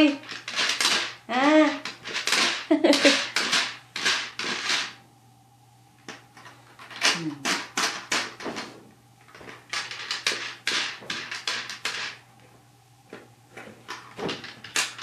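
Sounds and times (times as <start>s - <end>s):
toy pieces clattering: 0.2s - 5.0s, 9.7s - 12.2s, 13.9s - 15.0s.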